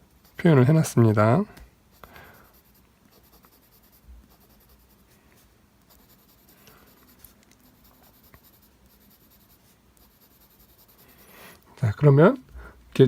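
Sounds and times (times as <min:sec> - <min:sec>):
pencil scratching on paper: 0:00.2 - 0:00.7, 0:01.9 - 0:05.2, 0:05.9 - 0:11.3.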